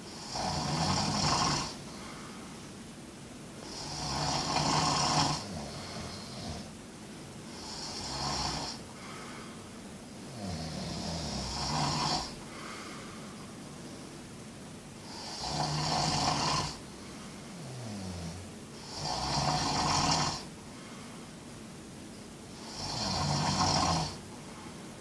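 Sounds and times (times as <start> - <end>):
person snoring: 0.0 - 2.4, 3.6 - 6.7, 7.5 - 9.6, 10.2 - 13.2, 15.0 - 20.5, 22.5 - 24.2.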